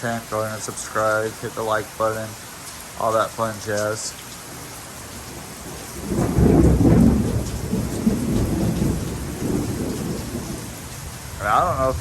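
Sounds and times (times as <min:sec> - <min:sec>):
steady rain falling: 0:00.0 - 0:12.0
thunder rumbling: 0:05.2 - 0:12.0.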